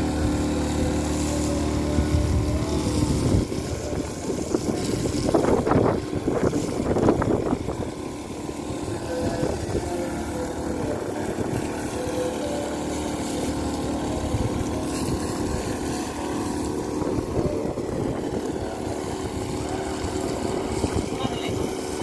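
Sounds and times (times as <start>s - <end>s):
two-stroke engine running: 0.0s - 22.0s.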